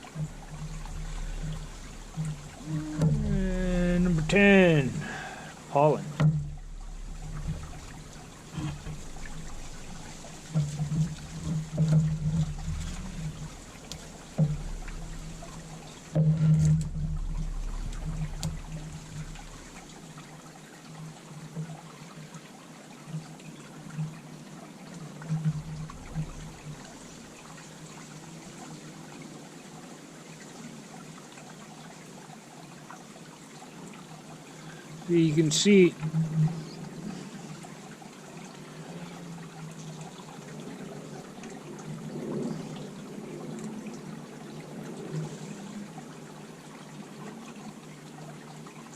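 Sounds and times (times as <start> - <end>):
bees buzzing: 0.0 - 19.8.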